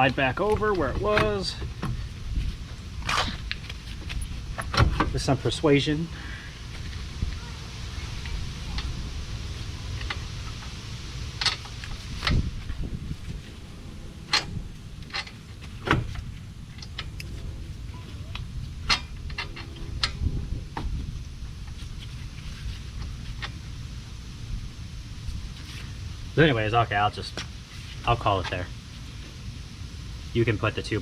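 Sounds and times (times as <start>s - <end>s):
low steady rumble: 0.0s - 31.0s
metal clanks of brake tools: 18.8s - 20.2s.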